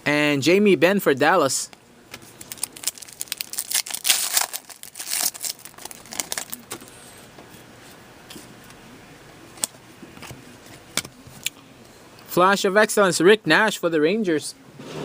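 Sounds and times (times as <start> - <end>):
cards being handled: 2.1 - 7.0
foil wrappers tearing and crinkling: 2.4 - 6.8.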